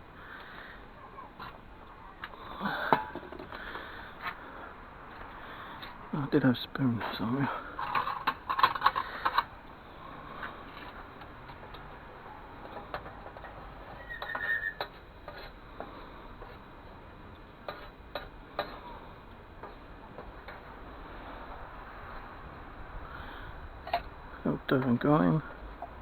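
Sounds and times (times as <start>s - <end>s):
brief high squeak: 14.0s - 14.8s.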